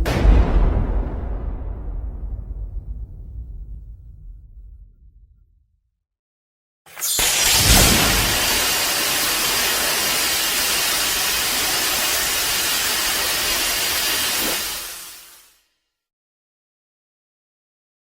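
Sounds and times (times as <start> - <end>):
sudden blast: 0.0 - 5.4, 7.0 - 10.4
loud hissing rush: 6.9 - 15.4.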